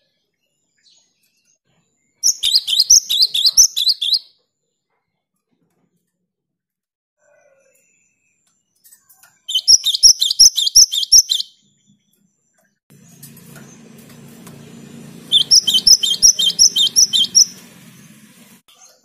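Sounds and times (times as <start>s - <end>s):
bird singing rapid high notes: 2.2s - 4.3s, 9.5s - 11.7s, 15.1s - 18.5s.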